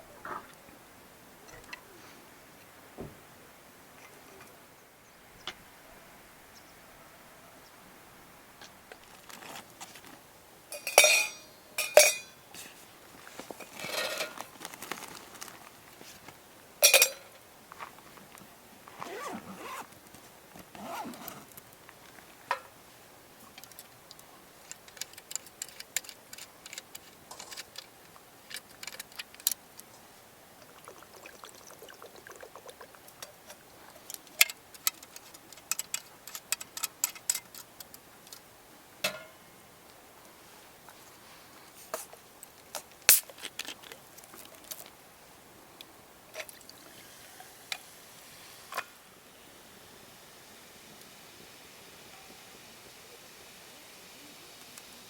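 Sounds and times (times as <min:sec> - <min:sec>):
metallic clinks and ticks: 0:10.8 - 0:12.4, 0:33.2 - 0:38.4.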